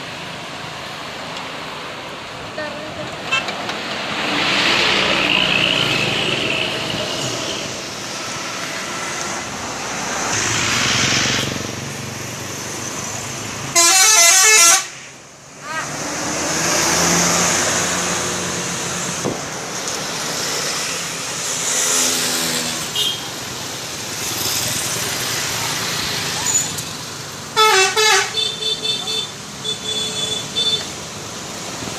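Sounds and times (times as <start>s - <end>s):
road traffic and engine noise: 0.0s - 31.9s
musical bus air horn: 13.7s - 15.0s, 27.6s - 30.8s.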